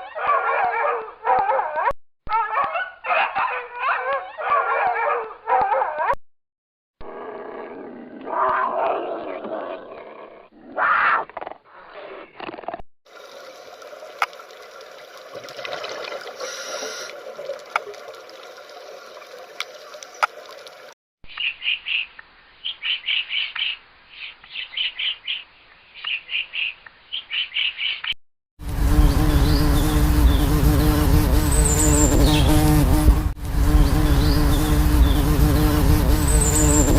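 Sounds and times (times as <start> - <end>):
small bird chirping: 21.3 - 28.2, 29.4 - 32.8, 36.2 - 36.9.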